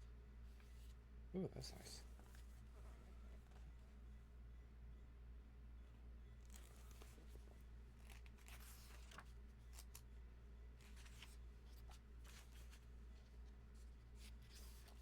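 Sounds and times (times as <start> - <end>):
pages being turned: 8.0 - 10.0, 10.8 - 12.9.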